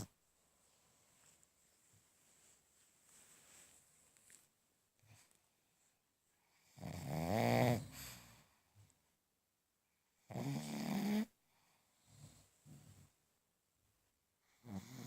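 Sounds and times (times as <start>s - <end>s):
person snoring: 6.8s - 8.0s.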